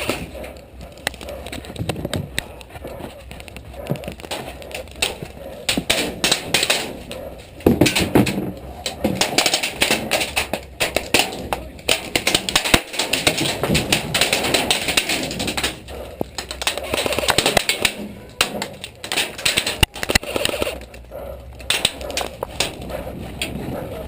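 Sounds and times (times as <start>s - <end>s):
airsoft guns firing: 4.2s - 20.9s.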